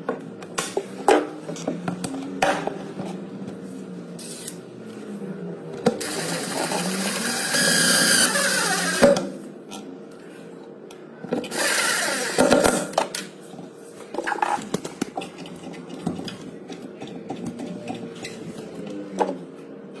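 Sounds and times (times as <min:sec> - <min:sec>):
hand-held power drill running: 0:06.0 - 0:09.2, 0:11.5 - 0:12.6.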